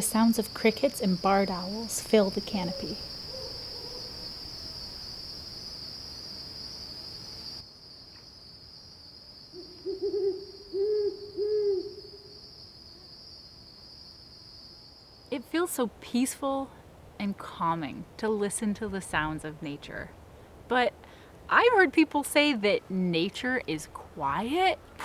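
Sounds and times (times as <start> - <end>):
crickets trilling: 0.0 - 17.1
owl hooting: 1.6 - 5.0, 9.5 - 12.4.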